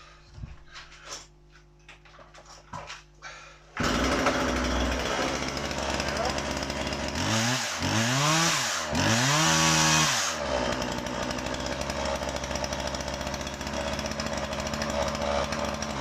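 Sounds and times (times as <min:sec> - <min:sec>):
chainsaw revving and idling: 0:03.8 - 0:16.0.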